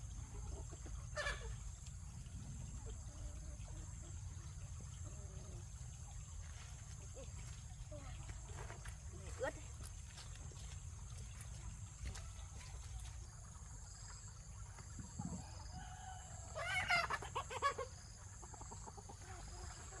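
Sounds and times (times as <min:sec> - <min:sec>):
chickens clucking: 0:00.0 - 0:20.0
drawn-out chicken call: 0:00.2 - 0:01.8, 0:15.1 - 0:20.0.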